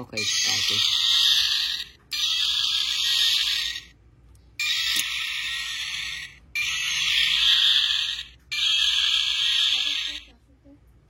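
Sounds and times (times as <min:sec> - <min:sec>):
tinny toy dinosaur roar: 0:04.6 - 0:10.2.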